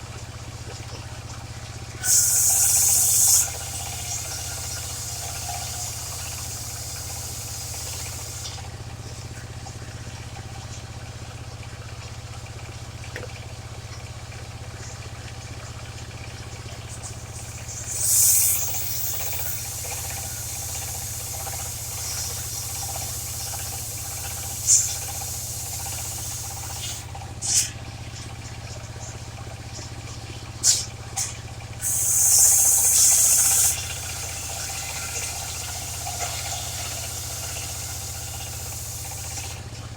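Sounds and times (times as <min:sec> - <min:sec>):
sawmill engine running: 0:00.0 - 0:11.1, 0:14.2 - 0:39.9
saw blade cutting timber: 0:02.0 - 0:08.6, 0:17.0 - 0:27.7, 0:31.8 - 0:39.6.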